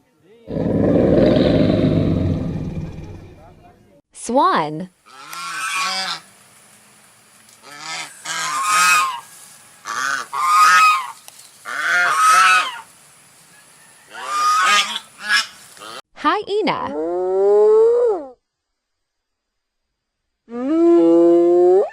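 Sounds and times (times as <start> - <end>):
swan honking: 7.6 - 12.8.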